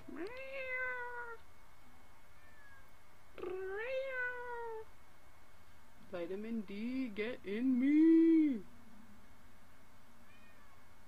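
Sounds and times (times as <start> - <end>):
cat meowing: 0.0 - 1.4, 2.4 - 4.9, 10.2 - 10.8.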